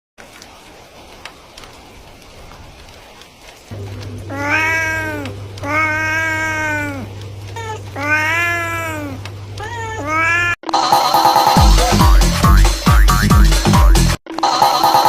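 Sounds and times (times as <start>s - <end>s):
low steady hum: 3.7s - 10.6s
cat meowing: 4.1s - 10.6s.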